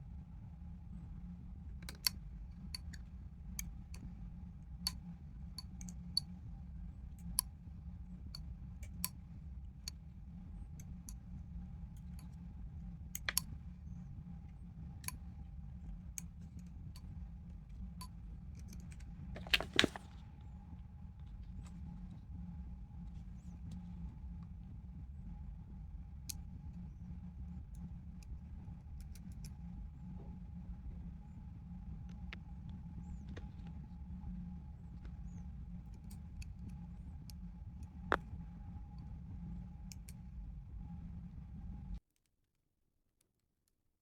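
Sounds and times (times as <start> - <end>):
steady low hum: 0.0 - 42.0
clicks of small parts handled: 18.6 - 20.2.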